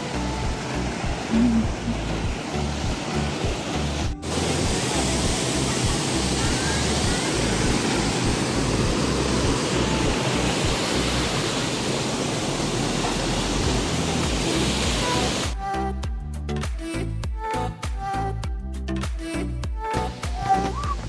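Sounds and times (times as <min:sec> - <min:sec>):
waterfall roar: 0:00.0 - 0:15.6.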